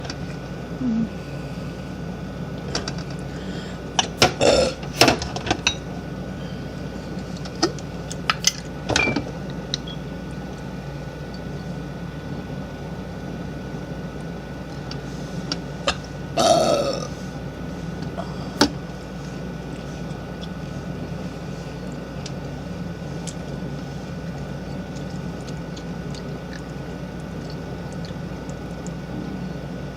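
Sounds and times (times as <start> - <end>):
steady low hum: 0.0 - 29.9
woman burping: 4.4 - 4.8, 16.4 - 17.2.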